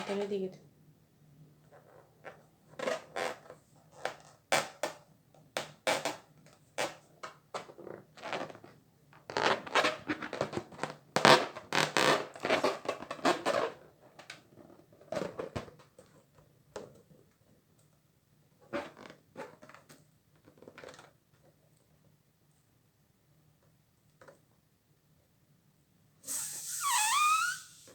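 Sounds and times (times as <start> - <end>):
water balloons popping: 26.3 - 27.9.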